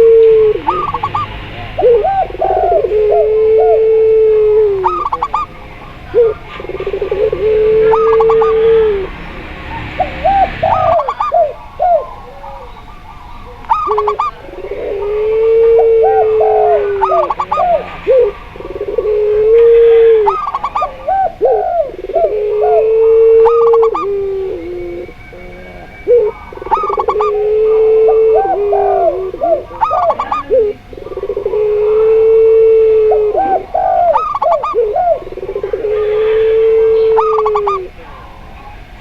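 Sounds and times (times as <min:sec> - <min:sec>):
doves cooing: 0:00.0 - 0:39.0.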